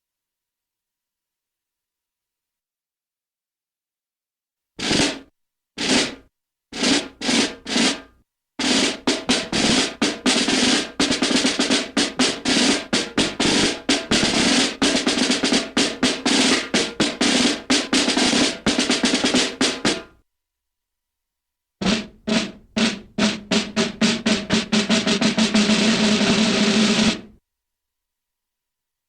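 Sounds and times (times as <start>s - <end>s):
snare drum hits: 4.8s - 5.2s, 8.6s - 20.1s.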